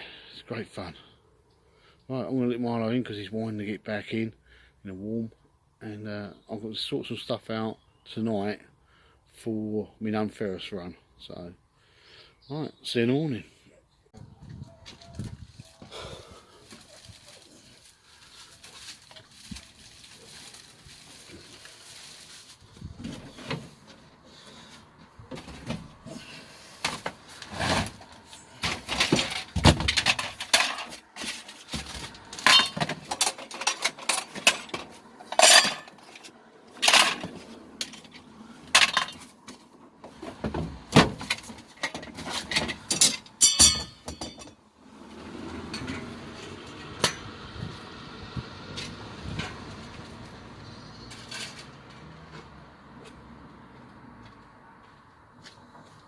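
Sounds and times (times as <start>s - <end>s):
metal objects clanking: 28.6s - 39.3s, 41.1s - 44.6s.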